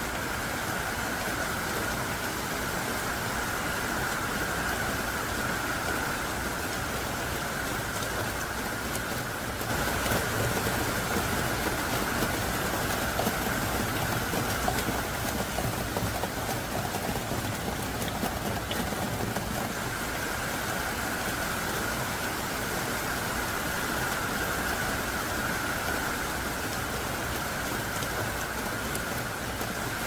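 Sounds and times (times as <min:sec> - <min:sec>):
heavy rain: 0:00.0 - 0:30.0.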